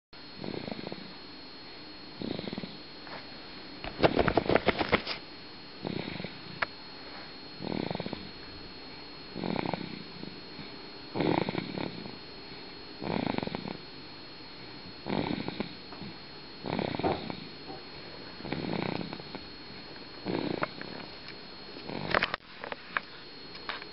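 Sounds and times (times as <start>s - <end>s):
rattling snores: 0.4s - 1.2s, 2.2s - 2.8s, 5.8s - 6.4s, 7.6s - 8.3s, 9.4s - 12.2s, 13.0s - 13.8s, 15.0s - 17.8s, 18.4s - 19.4s, 20.2s - 21.1s, 21.8s - 22.4s.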